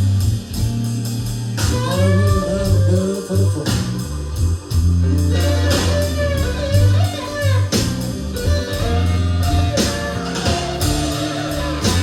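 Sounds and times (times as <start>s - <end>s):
bass and drums: 0.0s - 12.0s.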